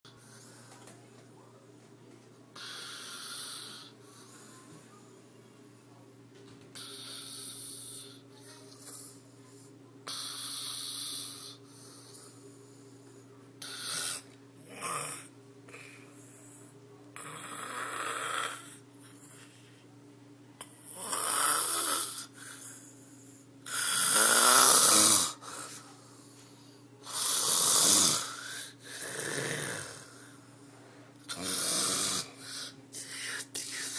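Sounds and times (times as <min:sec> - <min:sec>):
man snoring loudly: 0:17.2 - 0:18.8, 0:20.9 - 0:22.3, 0:23.7 - 0:25.4, 0:27.1 - 0:30.1, 0:31.3 - 0:32.7.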